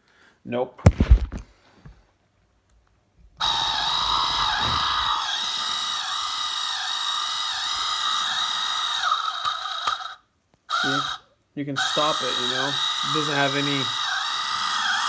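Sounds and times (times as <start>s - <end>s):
small electric motor whining: 3.4s - 11.2s, 11.8s - 15.0s.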